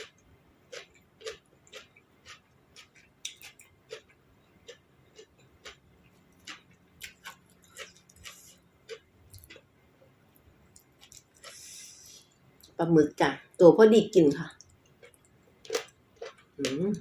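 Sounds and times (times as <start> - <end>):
person chewing crunchy food: 0.0 - 9.7, 10.7 - 12.1, 14.6 - 16.8.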